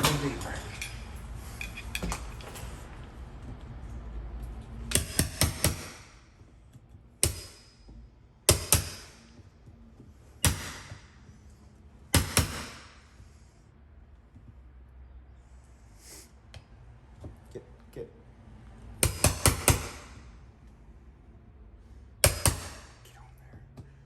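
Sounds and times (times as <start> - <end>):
hammer striking chisel: 4.9 - 6.2, 7.2 - 9.5, 10.4 - 11.2, 12.1 - 13.1, 19.0 - 20.3, 22.2 - 23.0.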